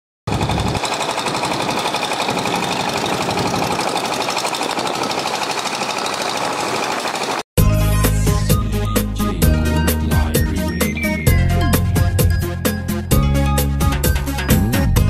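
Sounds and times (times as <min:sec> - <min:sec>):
boat engine running: 0:00.3 - 0:07.4
music: 0:07.6 - 0:15.0.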